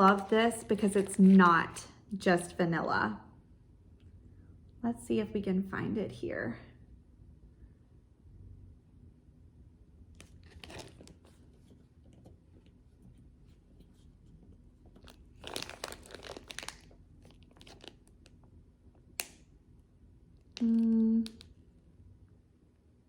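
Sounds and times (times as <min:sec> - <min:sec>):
plastic packaging crinkling: 0:00.0 - 0:01.8, 0:10.2 - 0:11.8, 0:14.8 - 0:18.5.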